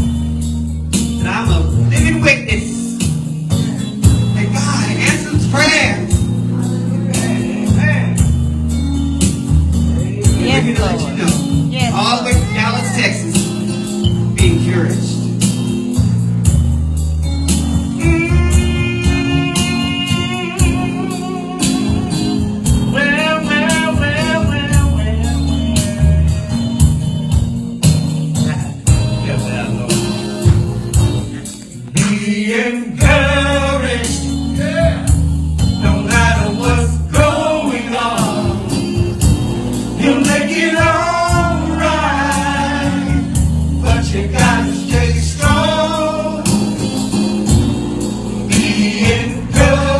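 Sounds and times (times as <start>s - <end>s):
low bass line: 0.0s - 32.4s, 33.0s - 49.9s
blues gospel band playing: 0.0s - 49.9s
even drum beat: 1.0s - 49.9s
man singing: 4.3s - 6.2s, 10.2s - 13.6s, 18.0s - 26.8s, 31.8s - 35.2s, 35.8s - 38.9s, 40.0s - 46.8s, 48.5s - 49.9s.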